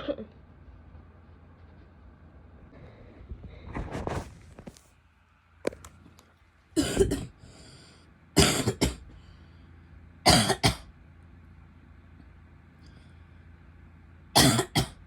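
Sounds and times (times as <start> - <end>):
woman coughing: 6.8 - 7.4, 8.4 - 9.0, 10.3 - 10.9, 14.4 - 15.0.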